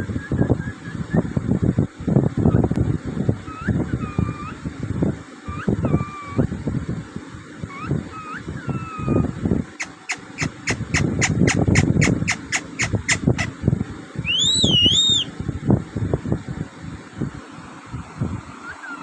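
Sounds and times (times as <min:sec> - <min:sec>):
parrot whistling and chirping: 0:03.5 - 0:04.6, 0:05.5 - 0:06.5, 0:07.7 - 0:13.5, 0:14.2 - 0:15.3.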